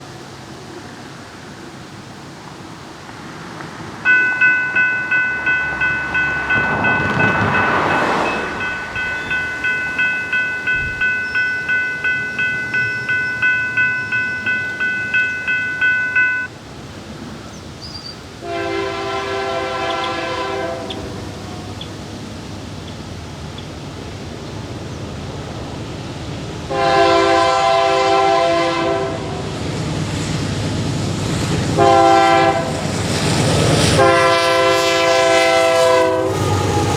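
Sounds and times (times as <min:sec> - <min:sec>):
road vehicle passing: 0:02.4 - 0:17.6
railroad crossing bell ringing: 0:04.0 - 0:16.6
locomotive air horn blasts: 0:18.4 - 0:21.3, 0:26.7 - 0:29.5, 0:31.8 - 0:32.9, 0:33.8 - 0:36.9.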